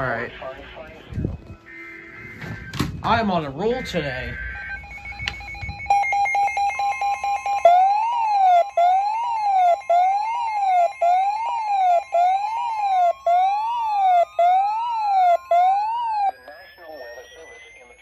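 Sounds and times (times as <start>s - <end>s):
steady high alert tone: 3.6s - 18.0s
siren-like alert tone sweeping: 3.7s - 18.0s
tone sliding upward: 4.3s - 17.7s.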